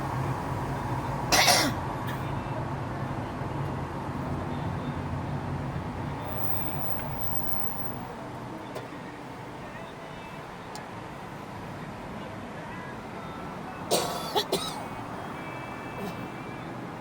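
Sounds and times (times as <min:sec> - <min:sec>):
person coughing: 0:01.3 - 0:01.8, 0:13.9 - 0:14.8.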